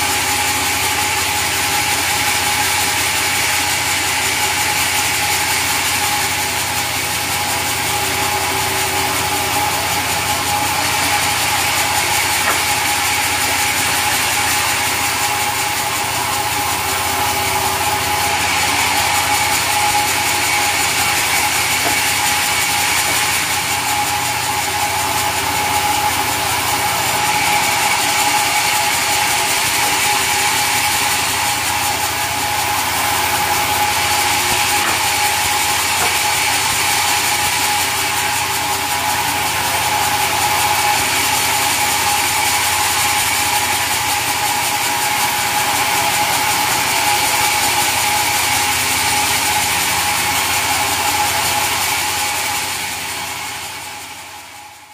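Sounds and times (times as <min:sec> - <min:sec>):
sawmill machinery running: 0:00.0 - 0:54.9.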